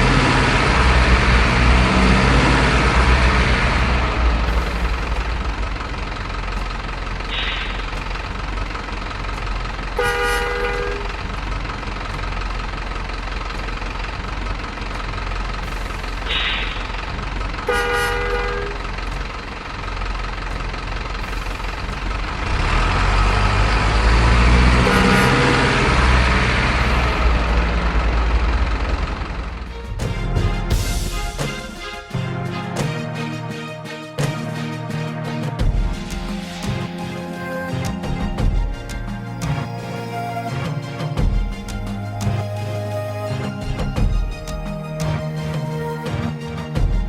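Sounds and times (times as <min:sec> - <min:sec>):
heavy truck traffic: 0:00.0 - 0:47.0
truck engine pulling away: 0:00.0 - 0:47.0
truck horn blasts: 0:09.8 - 0:11.5, 0:17.6 - 0:19.3, 0:22.4 - 0:28.0.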